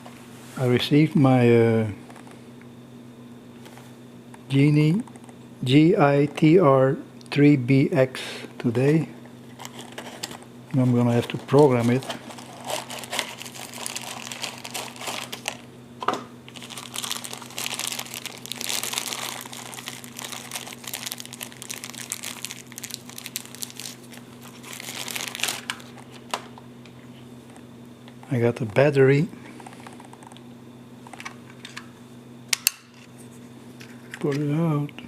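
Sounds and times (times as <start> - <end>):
packaging crinkling: 9.4 - 15.7, 16.5 - 26.6.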